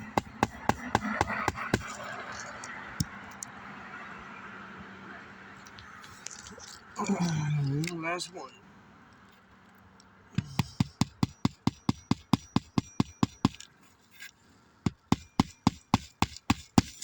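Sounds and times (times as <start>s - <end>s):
hammer driving nails: 0.0s - 2.0s, 10.4s - 13.6s, 14.9s - 17.0s.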